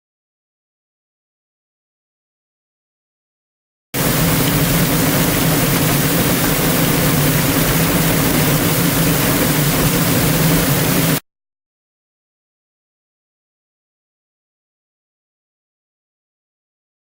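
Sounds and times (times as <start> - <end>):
waterfall rushing over rock: 4.0 - 11.2.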